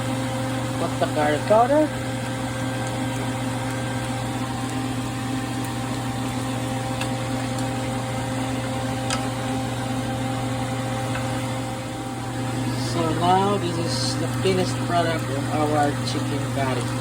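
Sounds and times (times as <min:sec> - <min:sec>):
steady machine hum: 0:00.0 - 0:17.0.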